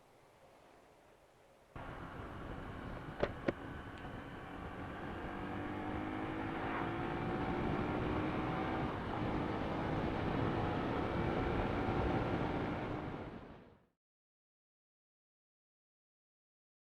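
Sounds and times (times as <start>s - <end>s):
road and wind noise: 0.0s - 13.8s
motorcycle engine running: 1.8s - 13.4s.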